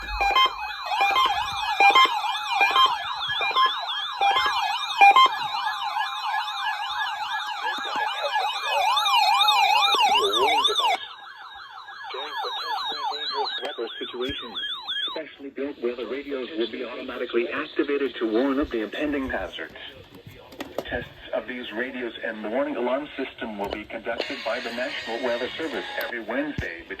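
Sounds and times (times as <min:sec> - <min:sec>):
electronic siren wails: 0:00.0 - 0:15.2, 0:24.1 - 0:26.4.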